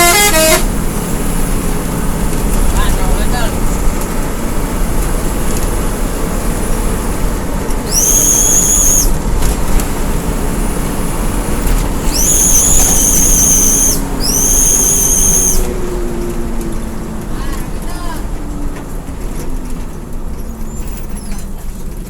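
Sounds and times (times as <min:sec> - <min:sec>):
bus engine and road rumble: 0:00.0 - 0:22.0
high-pitched whistle-like tone: 0:07.8 - 0:09.2, 0:12.0 - 0:15.8.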